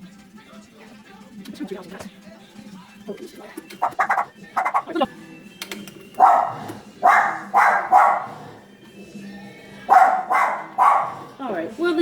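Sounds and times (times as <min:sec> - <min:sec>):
dog barking: 0:06.2 - 0:08.5, 0:09.8 - 0:11.4.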